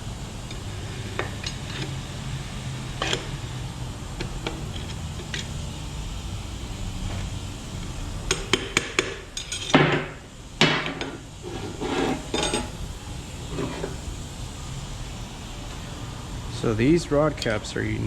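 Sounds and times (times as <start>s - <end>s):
metal parts clinking: 9.4s - 9.9s, 12.1s - 12.8s
ringing metal clanks: 12.1s - 12.8s.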